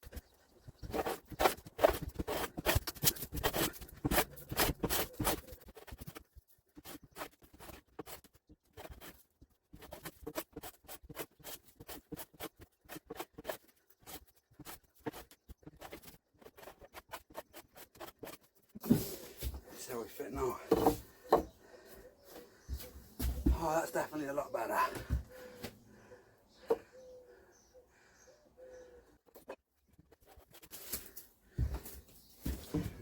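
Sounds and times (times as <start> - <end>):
hand plane cutting wood: 0.8 - 5.6.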